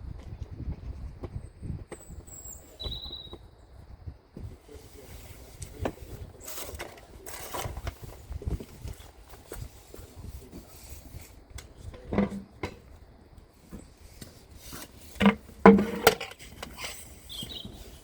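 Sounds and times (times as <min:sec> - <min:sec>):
metal parts scraping and rubbing: 0:14.5 - 0:18.0.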